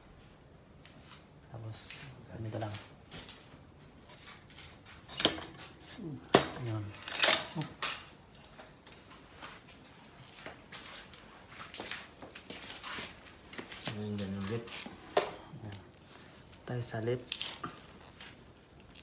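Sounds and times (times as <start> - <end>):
metal parts clinking: 6.3 - 9.1
metallic scrape: 6.4 - 8.6.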